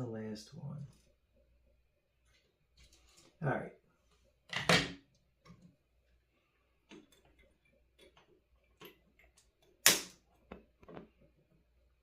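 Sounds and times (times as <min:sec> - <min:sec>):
light clicks and taps of tools: 0:06.8 - 0:11.3.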